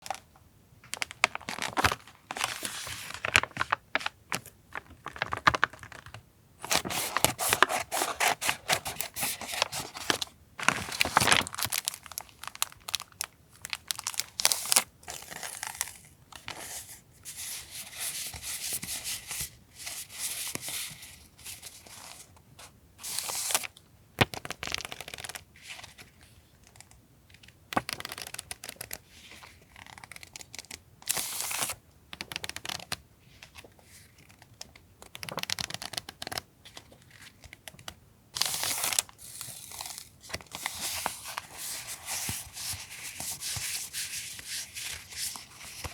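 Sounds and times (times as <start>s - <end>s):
paper crinkling and tearing: 4.8s - 15.8s.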